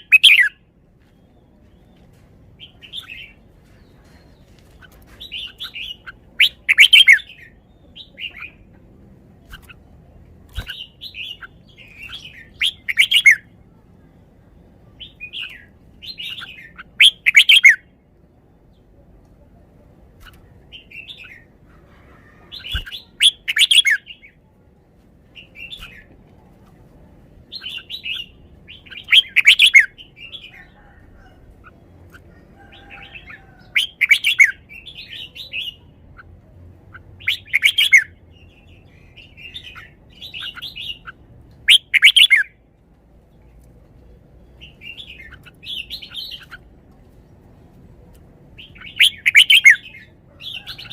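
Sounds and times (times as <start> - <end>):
bird warbled song: 0.0 - 0.6, 1.2 - 8.7, 10.5 - 13.5, 15.0 - 17.8, 22.4 - 24.4, 27.5 - 36.3, 36.9 - 42.5, 48.6 - 50.9.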